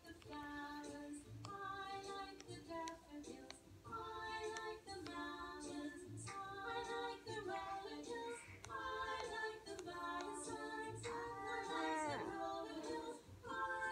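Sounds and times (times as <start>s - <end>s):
high-pitched voice singing: 9.8s - 13.9s.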